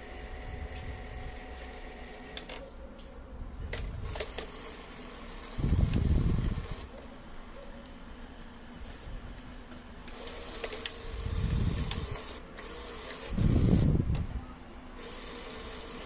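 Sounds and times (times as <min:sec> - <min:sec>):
steady hum: 0:00.0 - 0:16.0
sharp mechanical clicks: 0:02.1 - 0:03.1, 0:03.7 - 0:07.1, 0:10.0 - 0:14.3, 0:15.0 - 0:16.0.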